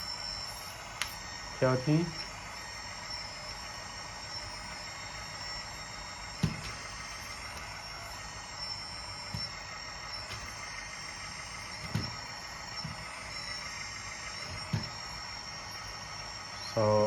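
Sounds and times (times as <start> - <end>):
hydraulic pump whine: 0.0 - 17.0
knocks: 6.4 - 6.8.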